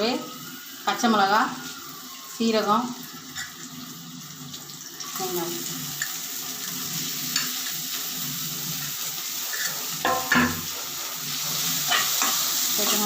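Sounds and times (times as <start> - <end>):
onion sizzling in hot oil: 0.0 - 13.0
spoon scraping a pan: 5.8 - 13.0.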